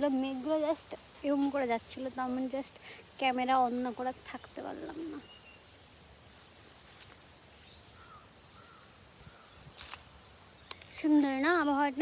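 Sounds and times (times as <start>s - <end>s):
distant bird calls: 0.0s - 12.0s
steady high-pitched hiss: 0.0s - 12.0s.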